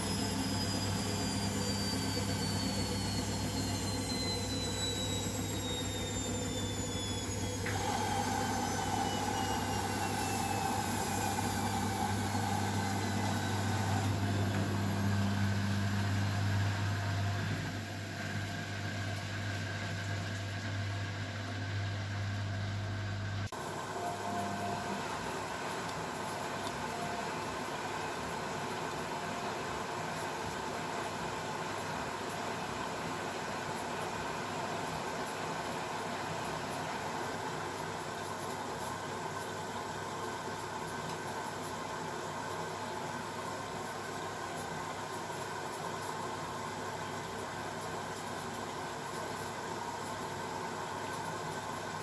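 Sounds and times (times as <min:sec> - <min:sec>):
washing machine motor whining: 0:00.0 - 0:52.0.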